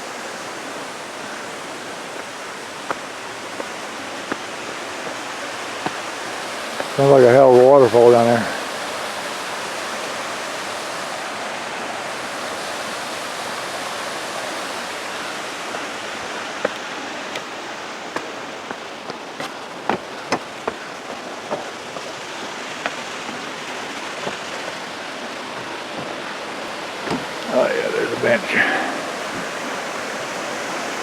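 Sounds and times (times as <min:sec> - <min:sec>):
distant waterfall rushing: 0:00.0 - 0:31.0.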